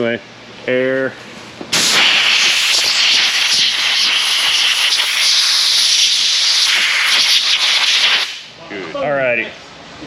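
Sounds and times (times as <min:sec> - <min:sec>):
compressed air blow gun hissing: 0:01.8 - 0:08.5.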